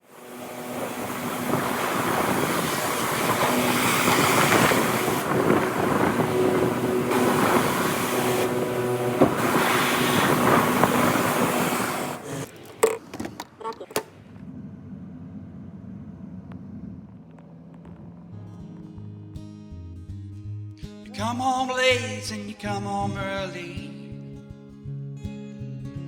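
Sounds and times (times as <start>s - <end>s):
sea waves: 0.0s - 12.8s
wind buffeting microphone: 0.1s - 12.5s.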